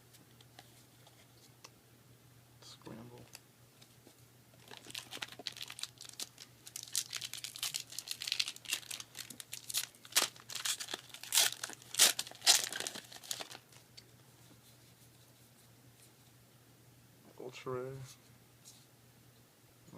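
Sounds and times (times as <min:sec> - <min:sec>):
foil pack tearing and crinkling: 0:04.6 - 0:13.7.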